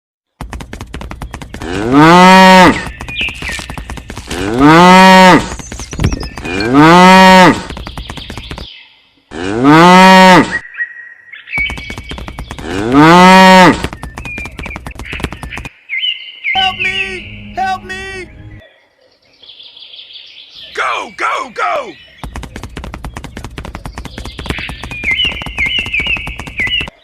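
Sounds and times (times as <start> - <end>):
cow mooing: 4.3 - 5.5, 9.3 - 10.6, 12.6 - 13.8.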